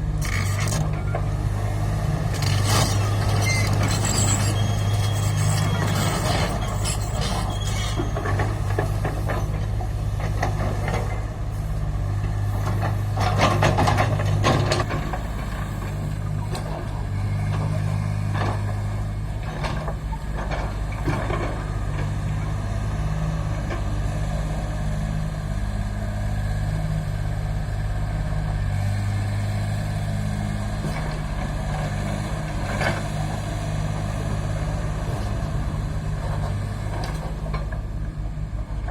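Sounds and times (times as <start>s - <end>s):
excavator diesel engine running: 0.0s - 38.9s
metal clanks and scraping: 0.2s - 1.2s, 2.3s - 9.6s.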